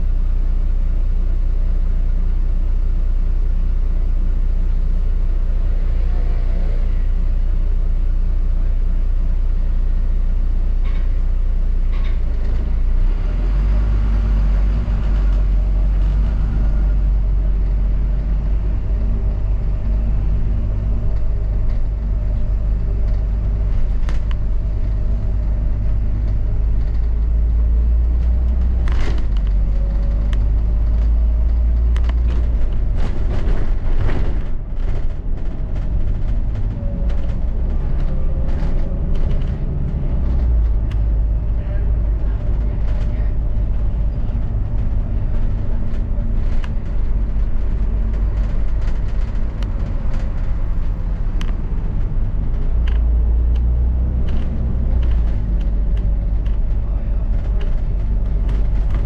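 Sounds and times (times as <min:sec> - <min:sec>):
bus engine drone with whine: 0:00.0 - 0:59.0
knocks and rattles: 0:20.2 - 0:59.0.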